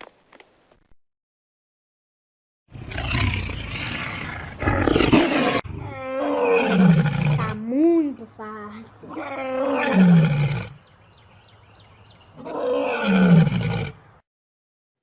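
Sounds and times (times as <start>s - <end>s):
lion roaring: 2.7s - 7.6s, 9.1s - 10.8s, 12.4s - 14.0s.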